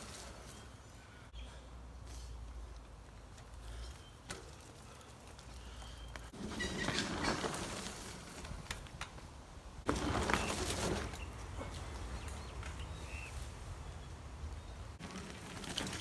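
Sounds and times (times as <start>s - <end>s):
bicycle tyres on dirt: 0.0s - 16.0s
bike clicks and rattles: 2.6s - 13.0s, 14.6s - 16.0s.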